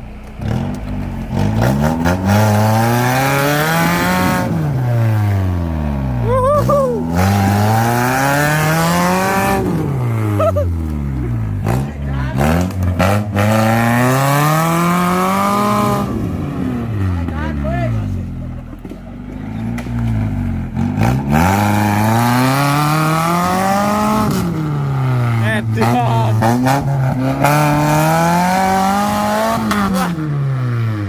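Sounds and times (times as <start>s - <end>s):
off-road vehicle engine revving: 0.0s - 31.0s.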